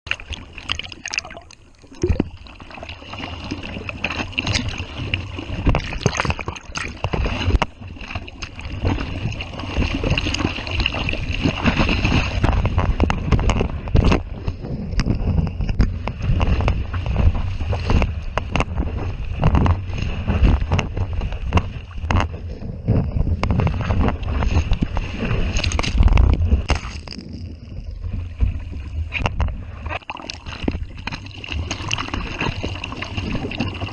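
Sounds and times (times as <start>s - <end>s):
surf breaking: 2.0s - 33.9s
wind buffeting microphone: 11.0s - 30.0s.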